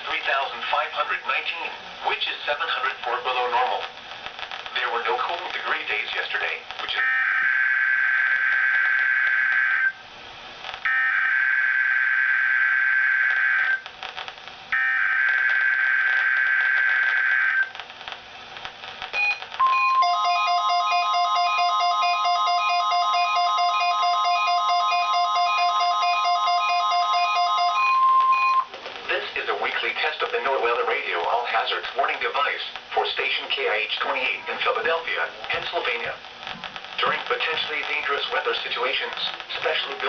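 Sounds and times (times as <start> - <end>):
steady alert tone: 19.2 - 28.7.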